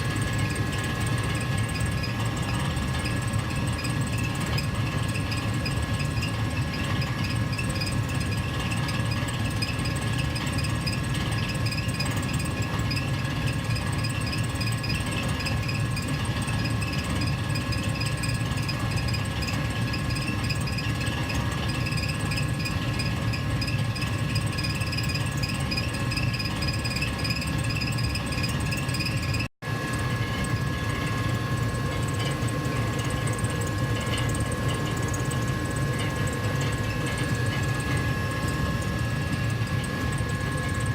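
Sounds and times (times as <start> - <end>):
furnace heater humming: 29.7 - 40.9.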